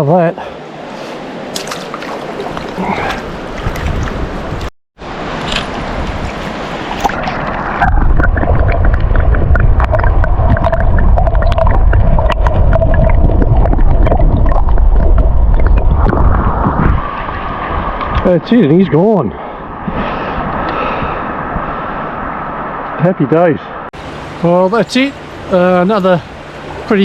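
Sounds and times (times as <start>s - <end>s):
river water rushing: 0.5s - 8.8s, 24.0s - 27.0s
heavy low rumble: 7.8s - 18.3s.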